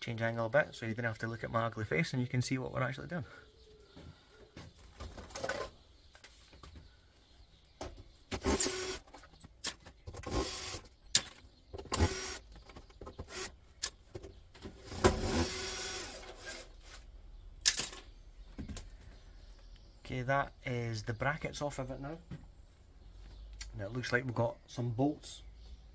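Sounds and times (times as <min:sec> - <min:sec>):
cordless drill running in bursts: 0:08.4 - 0:09.0, 0:10.3 - 0:10.8, 0:12.0 - 0:12.4, 0:13.3 - 0:13.5, 0:15.1 - 0:16.3.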